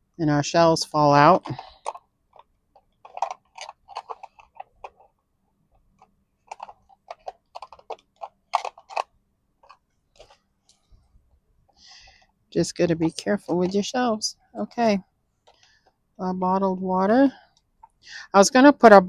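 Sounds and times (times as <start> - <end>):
small plastic parts clicking: 1.4 - 5.1, 6.0 - 10.8.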